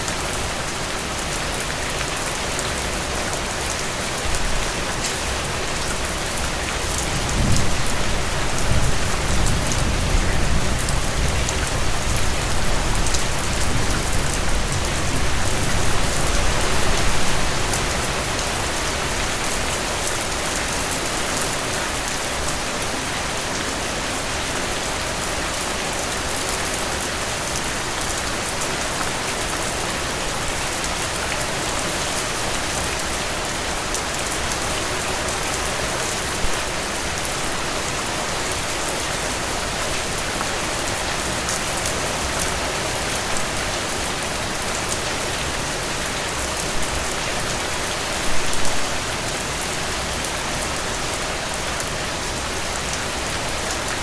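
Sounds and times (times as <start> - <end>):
steady rain falling: 0.0 - 54.0
thunder rumbling: 7.2 - 16.1.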